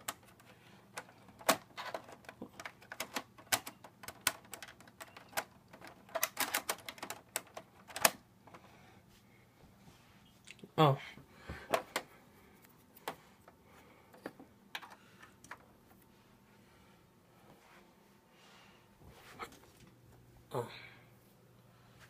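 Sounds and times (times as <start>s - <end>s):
clicks and knocks of plugging cables: 0.0s - 8.6s, 11.5s - 12.1s.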